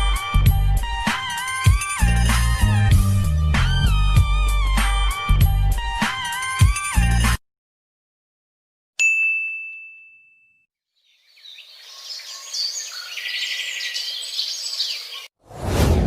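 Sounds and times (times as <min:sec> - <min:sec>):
bright bell ding: 0:09.0 - 0:10.7
birds chirping and singing: 0:11.0 - 0:15.3
loud low rush: 0:15.5 - 0:16.0.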